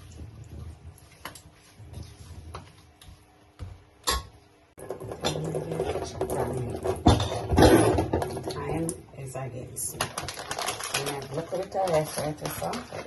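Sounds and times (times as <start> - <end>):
kitchen clatter and rustle: 4.8 - 8.9, 9.7 - 13.0.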